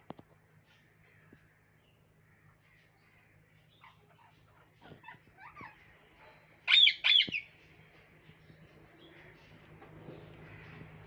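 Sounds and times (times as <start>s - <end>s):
parrots chattering: 3.0s - 7.5s
parrot harsh squawks: 6.7s - 7.4s.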